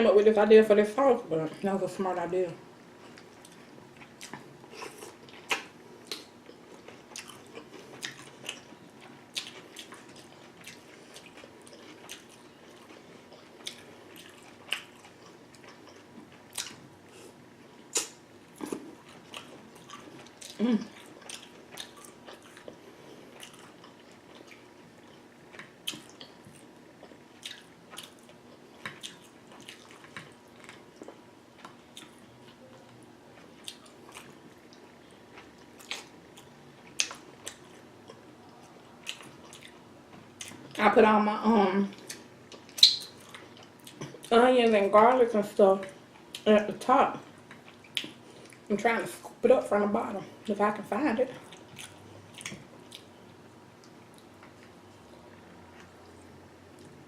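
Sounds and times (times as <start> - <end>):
wet chewing and lip smacking: 3.0 - 16.8, 17.9 - 39.8, 42.0 - 44.3, 47.4 - 48.7, 51.4 - 53.2.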